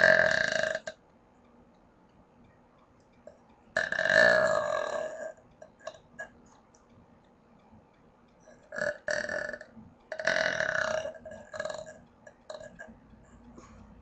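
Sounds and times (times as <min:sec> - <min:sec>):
person burping: 0:00.0 - 0:01.0, 0:03.8 - 0:06.3, 0:08.7 - 0:12.9.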